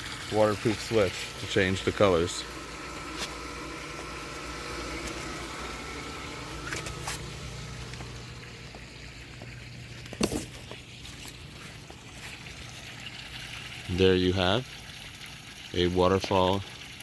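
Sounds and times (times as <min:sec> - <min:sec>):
faint water noise: 0:00.0 - 0:17.0
pool pump humming: 0:00.0 - 0:17.0.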